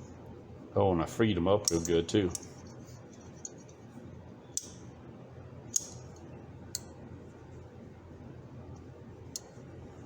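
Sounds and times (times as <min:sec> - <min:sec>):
steel pliers clicking: 0:04.6 - 0:04.8, 0:05.7 - 0:06.9, 0:09.3 - 0:09.5.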